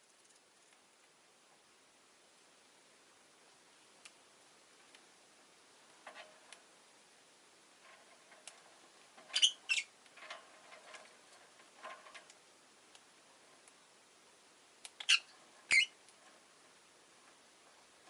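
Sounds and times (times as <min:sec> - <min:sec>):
lovebird chirping: 0:09.3 - 0:09.9, 0:15.0 - 0:16.0.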